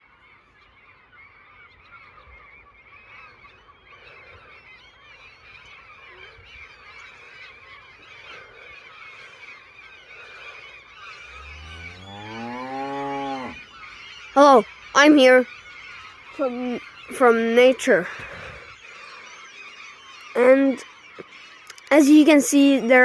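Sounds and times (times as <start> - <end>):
flock of gulls screeching: 6.0 - 23.0
low call rising in pitch: 11.2 - 13.7.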